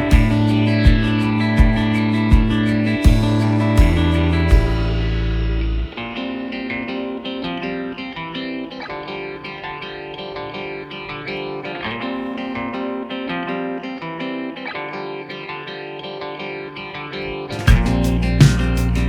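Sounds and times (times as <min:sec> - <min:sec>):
plucked guitar music: 0:00.0 - 0:19.0
low rumble: 0:00.1 - 0:05.9.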